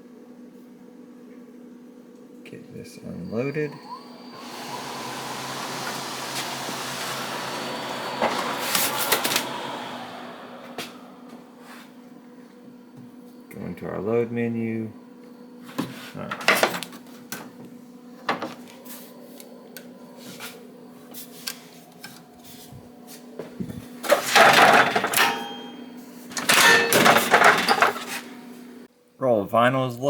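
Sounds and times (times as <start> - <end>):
vinyl sliding and rustling: 8.2 - 9.6
clicks and knocks: 24.1 - 28.2.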